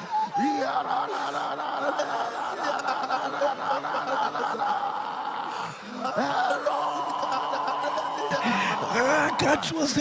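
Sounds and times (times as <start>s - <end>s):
congregation praying aloud: 6.2s - 10.0s.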